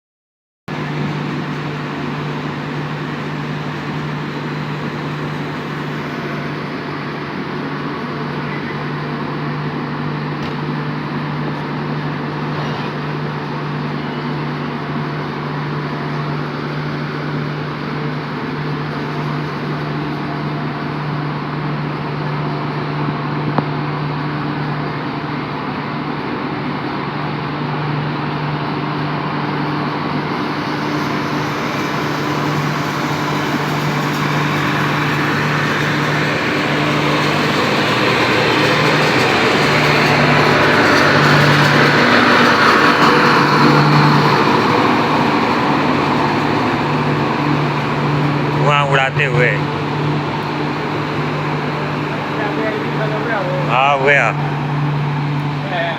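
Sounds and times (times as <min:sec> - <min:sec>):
diesel generator droning: 0:00.7 - 0:55.9.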